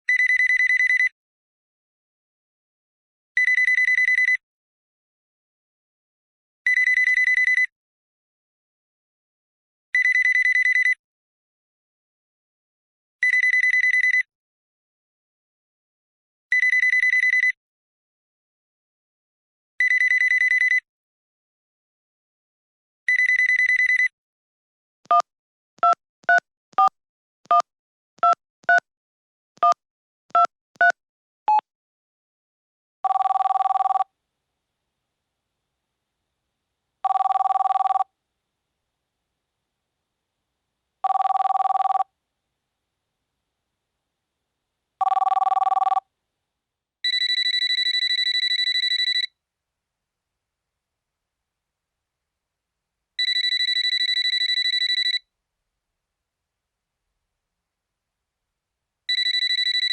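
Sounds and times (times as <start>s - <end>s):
touch-tone keypad beeps: 25.8s - 26.9s, 33.1s - 34.0s, 37.1s - 38.0s, 41.1s - 42.0s, 45.0s - 46.0s, 47.1s - 49.3s, 53.2s - 55.2s
telephone warbling ring: 33.1s - 34.0s, 37.1s - 38.0s, 41.1s - 42.0s, 45.0s - 46.0s
telephone two-tone trill: 53.2s - 55.2s.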